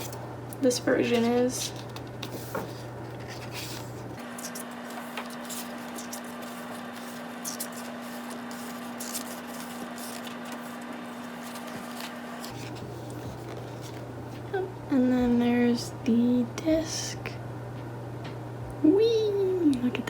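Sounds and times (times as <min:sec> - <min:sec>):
paper rustling: 0:00.0 - 0:14.5
steady low hum: 0:00.0 - 0:20.0.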